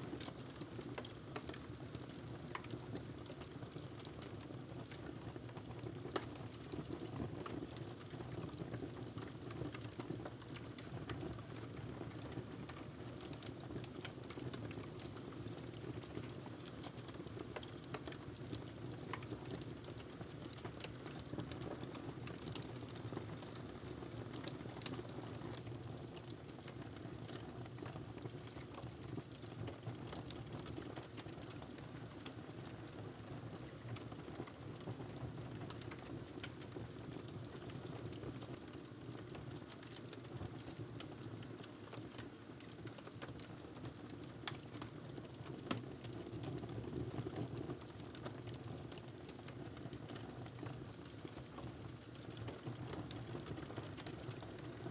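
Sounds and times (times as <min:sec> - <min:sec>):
wood fire crackling: 0:00.2 - 0:08.6, 0:11.3 - 0:29.3, 0:42.1 - 0:47.2.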